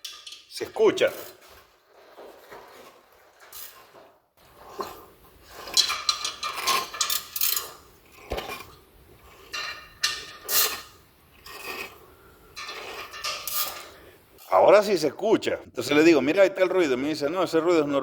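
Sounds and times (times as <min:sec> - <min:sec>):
gearbox metallic scraping and rattling: 0:00.0 - 0:08.8.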